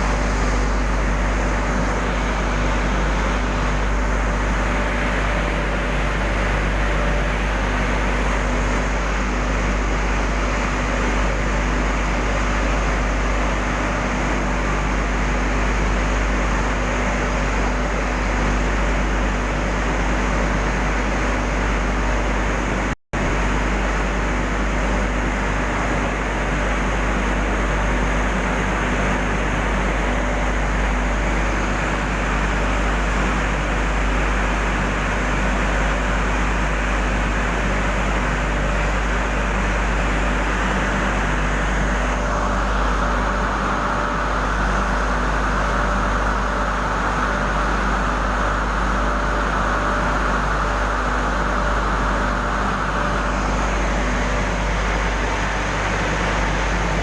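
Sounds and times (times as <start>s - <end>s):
constant low hum: 0.0s - 11.2s, 49.2s - 57.0s
industrial furnace roaring: 0.0s - 57.0s.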